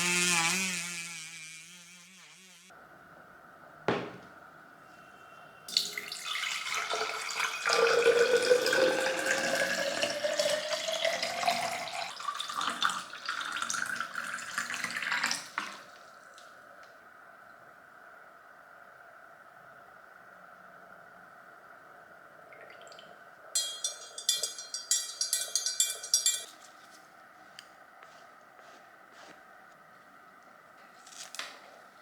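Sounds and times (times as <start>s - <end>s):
single knock: 3.9s - 4.3s
water filling a container: 5.7s - 16.1s.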